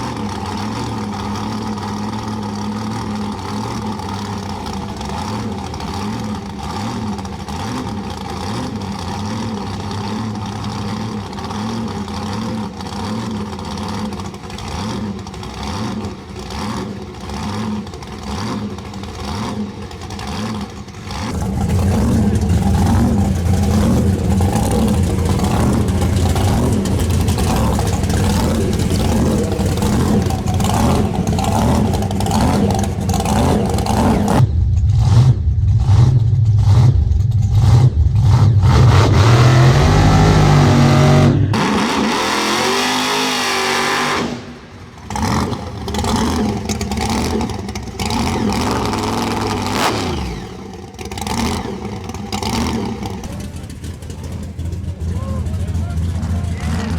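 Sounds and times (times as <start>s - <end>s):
drag race car engines: 0.0s - 56.9s.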